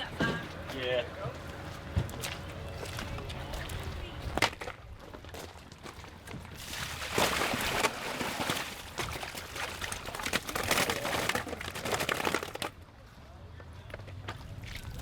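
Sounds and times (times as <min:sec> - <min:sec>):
water splashing and pouring: 0:06.6 - 0:10.5.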